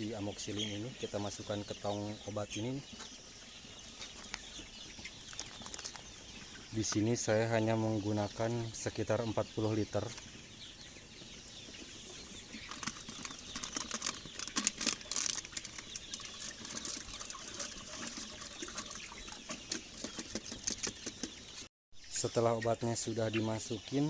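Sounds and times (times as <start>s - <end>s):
water sloshing in a drum: 12.7s - 21.3s.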